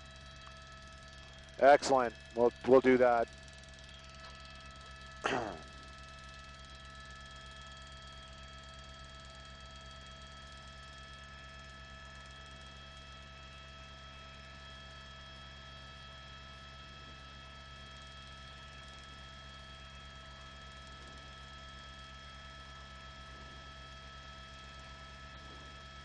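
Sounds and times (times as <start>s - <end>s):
faint high whines: 0.0s - 7.8s
electrical hum: 0.0s - 26.0s.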